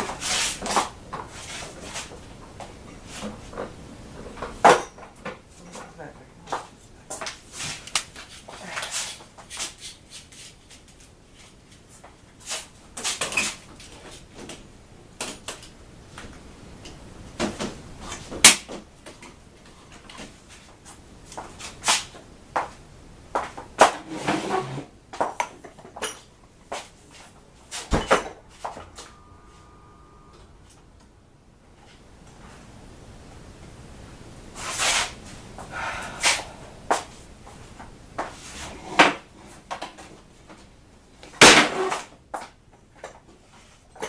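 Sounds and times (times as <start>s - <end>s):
brief steady tone: 28.7s - 31.2s.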